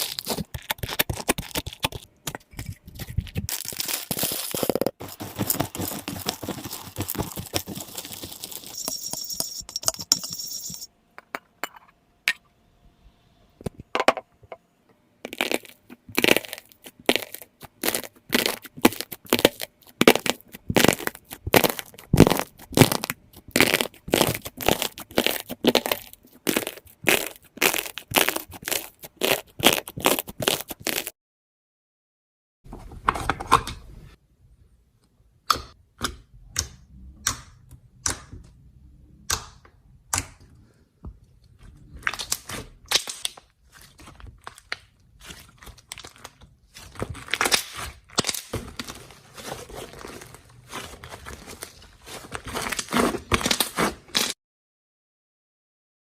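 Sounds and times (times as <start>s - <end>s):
slime crunching and crackling: 0.0s - 8.8s, 15.3s - 31.1s, 41.8s - 54.4s.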